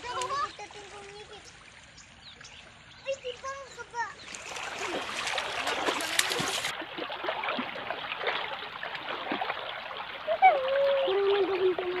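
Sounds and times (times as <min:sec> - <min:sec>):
river water flowing: 0:00.0 - 0:12.0
small splashes: 0:00.0 - 0:12.0.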